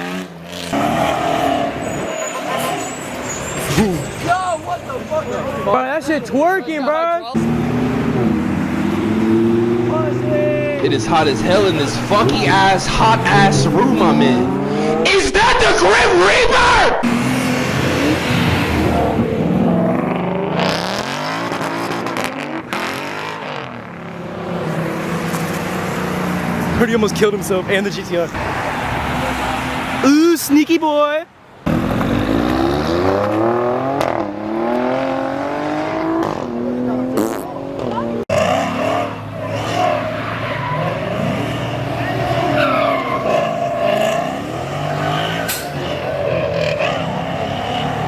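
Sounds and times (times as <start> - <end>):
car engine revving hard: 0.0 - 2.9, 7.4 - 23.8, 31.7 - 48.0
crowd voices: 9.0 - 17.4.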